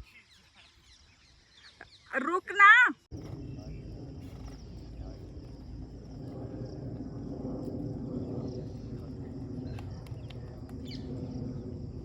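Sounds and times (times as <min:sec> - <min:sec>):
faint insect drone: 0:00.0 - 0:12.0
low rumble: 0:03.1 - 0:12.0.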